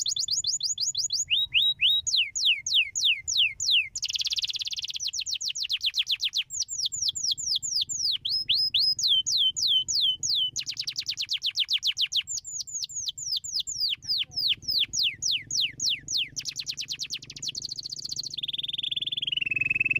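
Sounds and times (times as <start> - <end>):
canary singing: 0.0 - 19.9.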